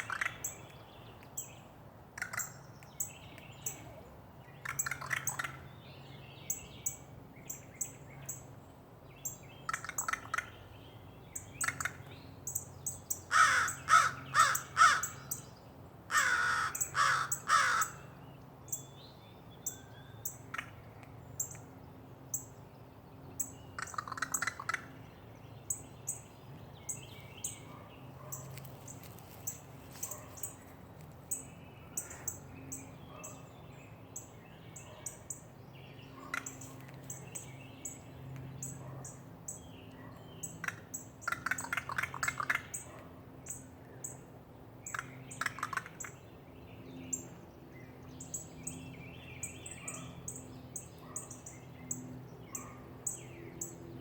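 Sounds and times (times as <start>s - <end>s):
crow calling harshly: 13.3s - 15.3s, 16.1s - 18.1s.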